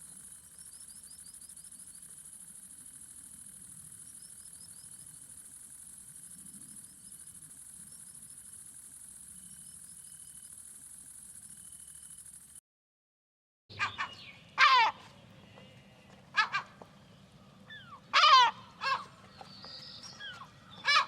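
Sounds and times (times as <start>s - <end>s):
insect-like reeling bird trill: 0.0s - 12.6s.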